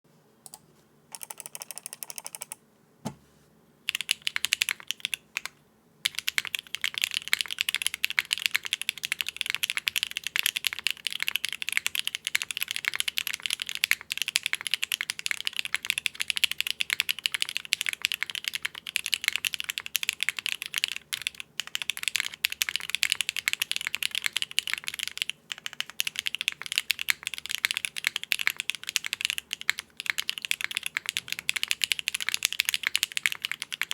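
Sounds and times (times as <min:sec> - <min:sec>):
mechanical keyboard typing: 0:00.5 - 0:02.6, 0:03.9 - 0:33.9.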